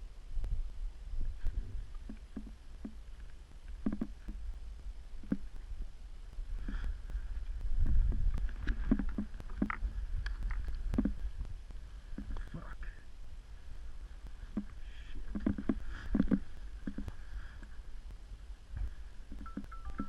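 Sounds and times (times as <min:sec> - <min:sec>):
wind rumbling on microphone: 0:00.0 - 0:20.0
soft knocks and crunches: 0:07.8 - 0:11.3, 0:14.4 - 0:17.7.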